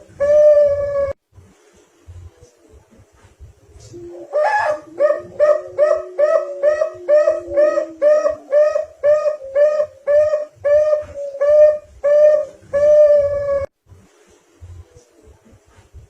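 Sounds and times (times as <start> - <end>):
dove cooing: 0.0 - 1.2, 3.7 - 13.7.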